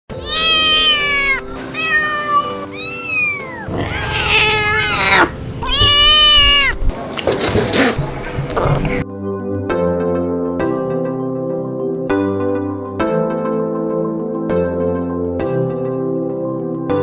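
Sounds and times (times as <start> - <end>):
kittens meowing: 0.1 - 6.9
soft background music: 0.1 - 7.0.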